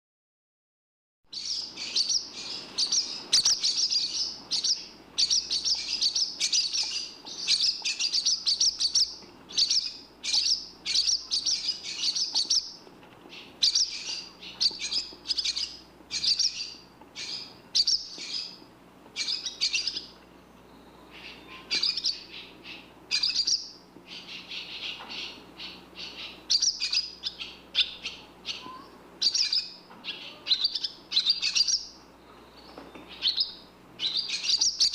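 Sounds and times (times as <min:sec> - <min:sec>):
swallow twittering high chirps: 0:01.3 - 0:18.6, 0:19.2 - 0:34.9.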